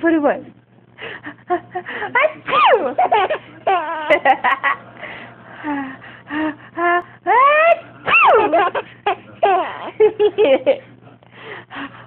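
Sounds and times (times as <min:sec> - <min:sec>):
baby laughing: 0:02.2 - 0:04.8, 0:07.3 - 0:10.4
baby squealing: 0:02.5 - 0:02.8, 0:08.1 - 0:08.8.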